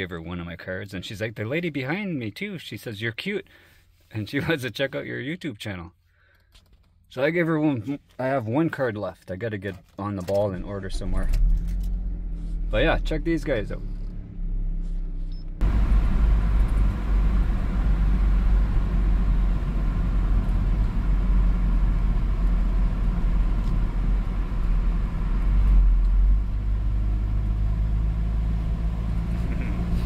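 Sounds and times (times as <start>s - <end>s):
engine and tyre rumble: 9.9s - 30.0s
road and wind noise: 10.3s - 30.0s.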